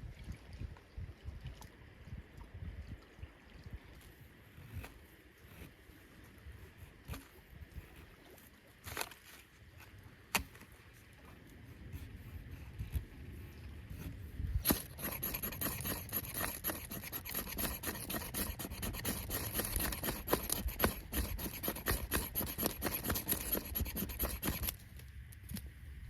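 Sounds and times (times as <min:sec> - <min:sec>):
rapid scraping strokes: 0:14.0 - 0:24.8.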